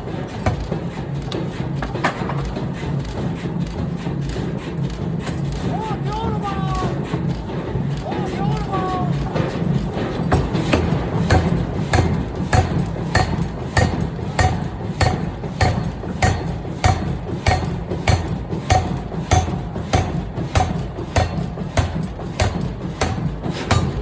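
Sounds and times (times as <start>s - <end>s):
low drone of factory machinery: 0.0s - 24.0s
air hammer striking hot steel: 8.1s - 24.0s.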